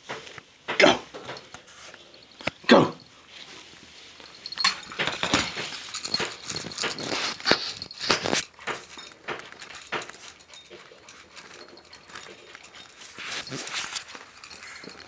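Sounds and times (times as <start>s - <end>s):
clicks and clinks at food bowl: 4.2s - 15.0s.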